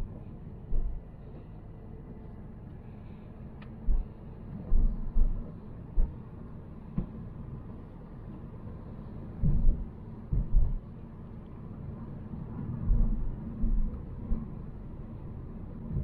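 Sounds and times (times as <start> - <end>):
road and engine rumble: 0.0 - 16.0
short low thumps: 0.7 - 1.0, 9.4 - 10.8.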